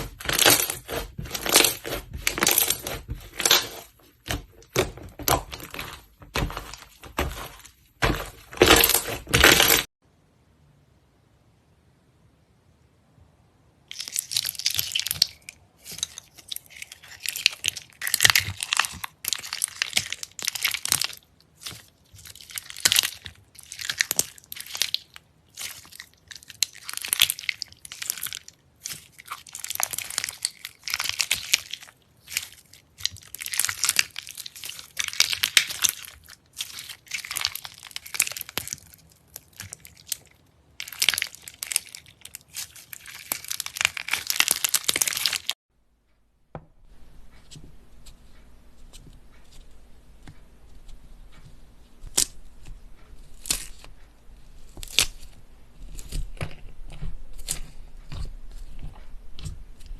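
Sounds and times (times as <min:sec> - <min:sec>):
crunchy slime being squeezed: 0:00.0 - 0:09.9, 0:13.9 - 0:45.6.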